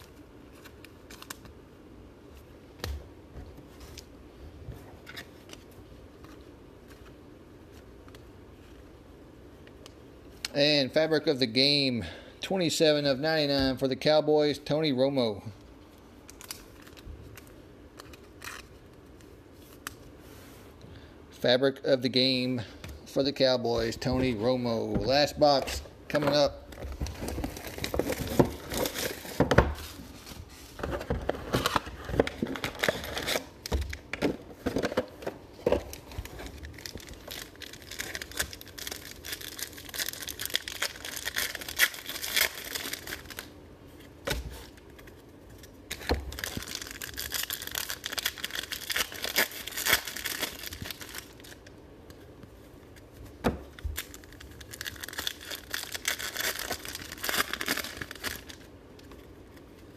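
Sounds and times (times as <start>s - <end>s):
plastic wrapping crinkling and tearing: 25.1s - 30.3s, 30.9s - 34.1s, 35.8s - 43.5s, 44.5s - 52.2s, 53.7s - 59.9s.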